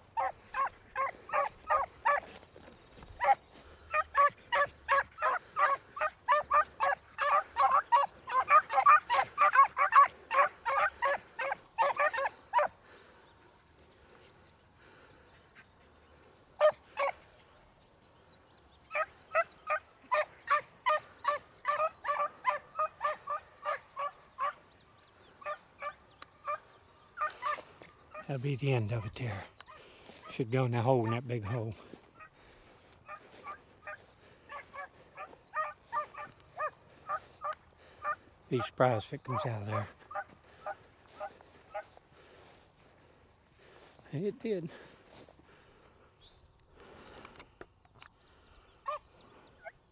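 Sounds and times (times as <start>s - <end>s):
dogs baying: 3.1s - 13.0s, 18.9s - 24.6s, 31.4s - 38.3s, 39.3s - 42.4s.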